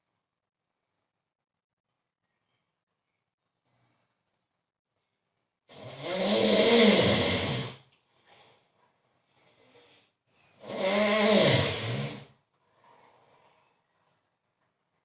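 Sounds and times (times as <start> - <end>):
man snoring loudly: 5.7 - 7.8, 10.6 - 12.3
faint breathing: 8.0 - 10.6, 12.6 - 14.4.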